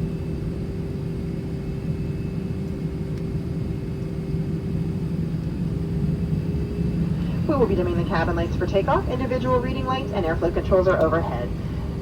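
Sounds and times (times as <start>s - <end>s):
constant hum: 0.0s - 12.0s
aircraft cabin rumble: 4.9s - 12.0s.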